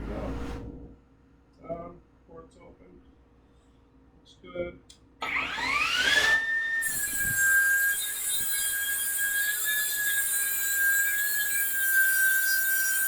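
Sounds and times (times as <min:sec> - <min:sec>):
electric motor whining: 0:05.2 - 0:09.4.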